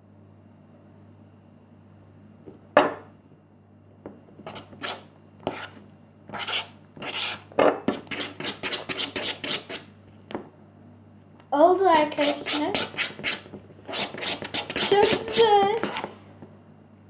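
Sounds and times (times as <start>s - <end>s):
slime scraping and rubbing in a bowl: 4.4s - 9.9s, 11.8s - 16.2s.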